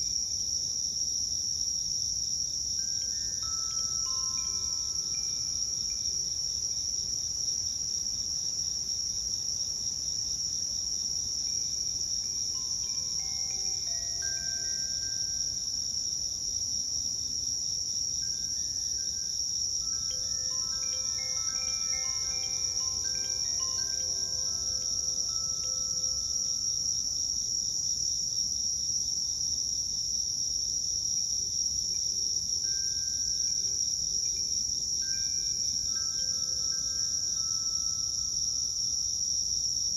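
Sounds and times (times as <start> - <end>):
insects chirping: 0.0 - 39.9
wind chime ringing: 2.8 - 6.4, 12.4 - 15.7, 18.4 - 27.2, 35.0 - 38.8.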